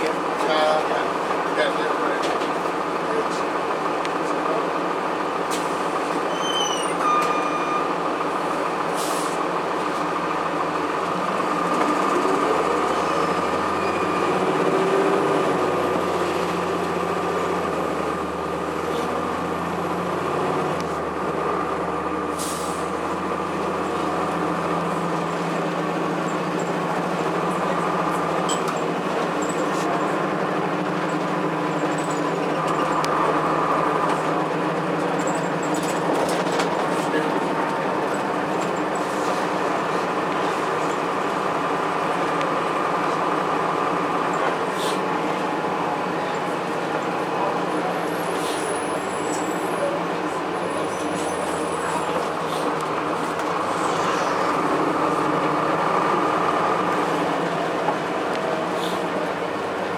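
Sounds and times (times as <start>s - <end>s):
bus diesel engine running: 0.0s - 59.9s
road and body noise: 0.0s - 59.9s.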